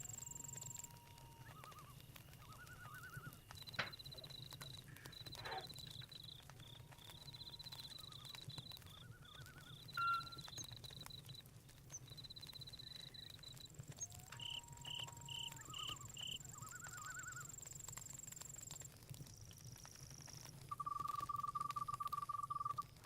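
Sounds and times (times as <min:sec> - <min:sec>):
campfire crackling: 0:00.0 - 0:23.0
crickets chirping: 0:00.0 - 0:23.0
sharp chirp: 0:07.2 - 0:11.4
short warbling calls: 0:07.7 - 0:10.6, 0:14.2 - 0:17.6.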